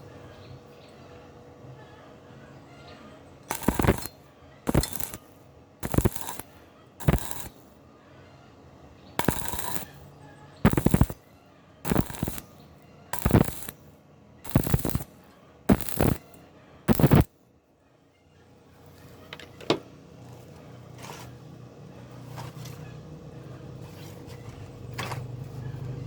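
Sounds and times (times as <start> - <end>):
welding arc crackling: 3.5 - 7.8, 9.2 - 11.3, 11.9 - 12.6, 13.2 - 15.1, 15.7 - 17.3.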